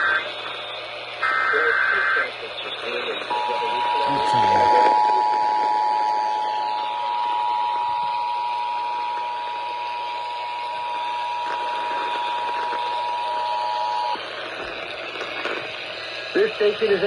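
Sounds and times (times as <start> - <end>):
radio static hiss: 0.0 - 17.0
two-tone alert signal over radio: 3.2 - 6.7.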